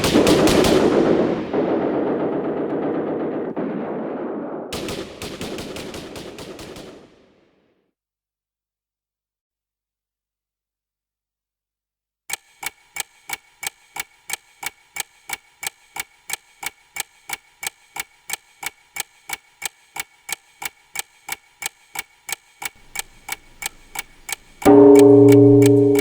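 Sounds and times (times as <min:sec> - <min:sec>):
clock ticking: 0:12.6 - 0:26.0.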